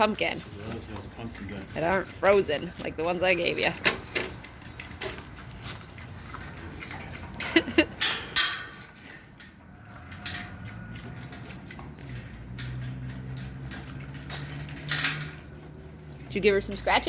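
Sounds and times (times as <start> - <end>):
pig grunting while eating: 3.8 - 8.4, 9.0 - 14.8
crunching and rustling: 3.8 - 16.4.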